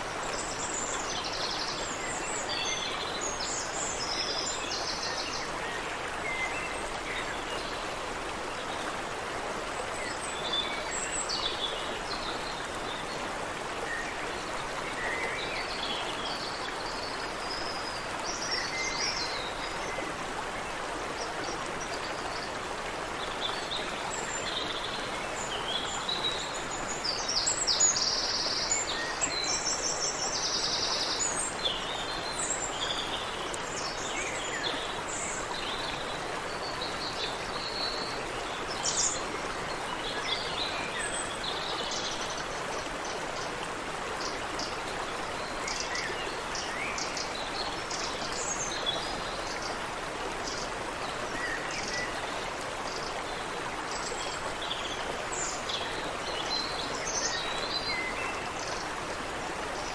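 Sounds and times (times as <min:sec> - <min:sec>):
stream running over rocks: 0:00.0 - 0:59.9
songbirds singing: 0:23.2 - 0:59.9.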